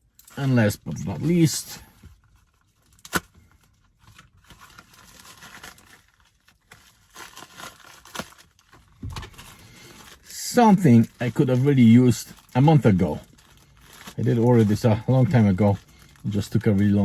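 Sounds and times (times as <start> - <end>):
parcel packaging tearing and crinkling: 0.5 - 17.0.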